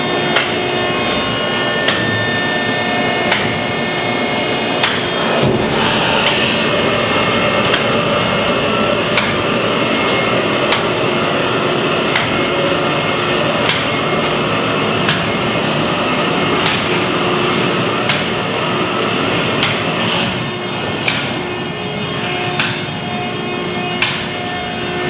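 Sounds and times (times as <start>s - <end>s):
baler machine running: 0.0s - 25.0s
sharp machine knocks: 4.8s - 6.6s.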